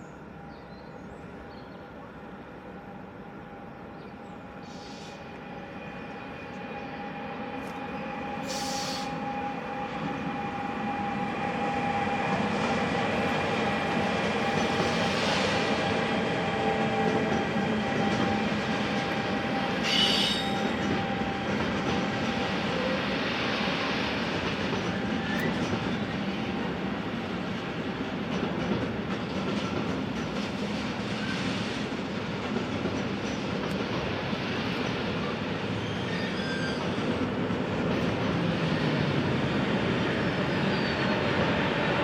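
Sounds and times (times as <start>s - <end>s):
train wheels rumbling: 4.4s - 42.0s
high-pitched wheel squeal: 19.8s - 20.7s, 35.8s - 37.0s.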